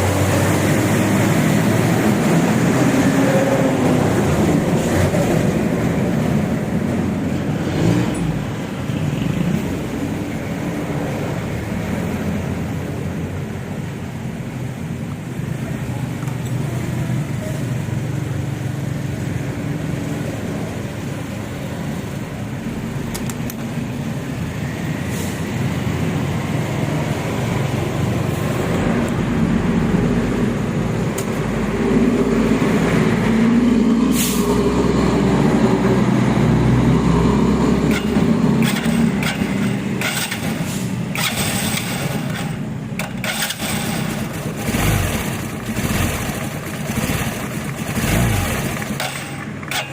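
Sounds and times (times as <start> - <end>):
sharp clicks: 23.0 - 23.7
motorcycle engine revving: 34.7 - 49.9.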